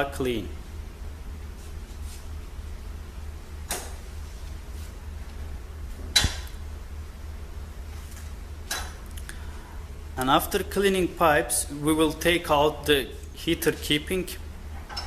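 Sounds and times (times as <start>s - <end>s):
steady low hum: 0.0s - 15.0s
rubbing and wiping: 1.5s - 2.5s, 4.1s - 5.2s.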